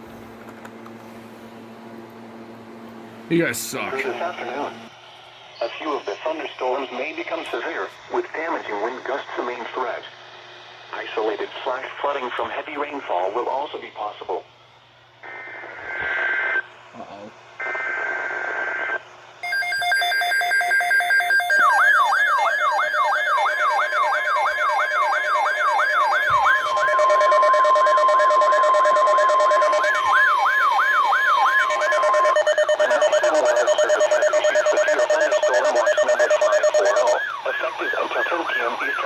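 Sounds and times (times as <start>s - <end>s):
steady alarm tones: 19.4s - 39.0s
warbling siren-like alarm: 19.4s - 39.0s.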